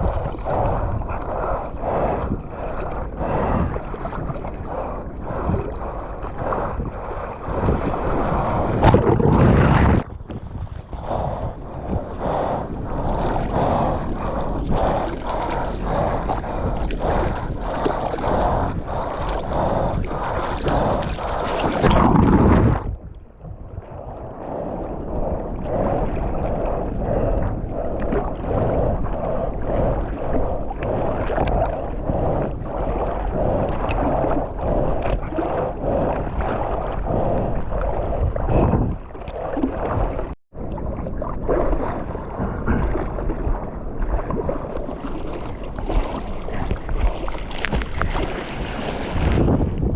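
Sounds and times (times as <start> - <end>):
seawater splashing and sloshing: 0.0 - 49.9
rushing surge of water: 7.4 - 10.2, 19.0 - 23.0, 27.5 - 49.9.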